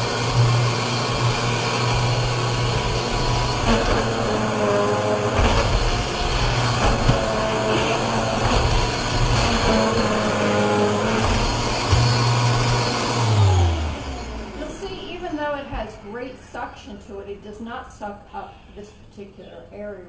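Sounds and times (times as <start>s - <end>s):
upright vacuum cleaner running: 0.0s - 16.7s.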